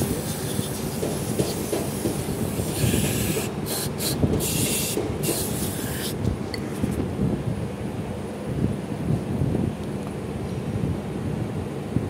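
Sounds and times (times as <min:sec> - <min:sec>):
aerosol spray hissing: 0:00.0 - 0:06.2.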